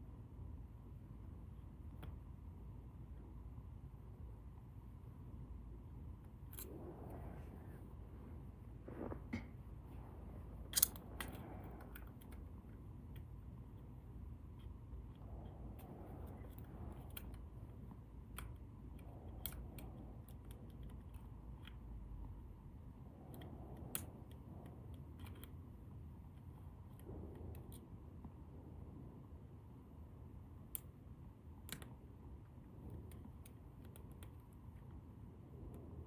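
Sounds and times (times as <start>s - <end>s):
faint low hum: 0.0s - 36.0s
lock pick metallic clicks: 10.7s - 11.4s.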